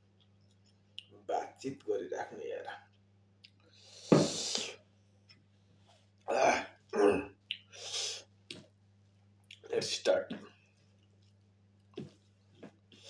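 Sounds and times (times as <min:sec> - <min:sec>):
person clearing throat: 0:06.3 - 0:07.4.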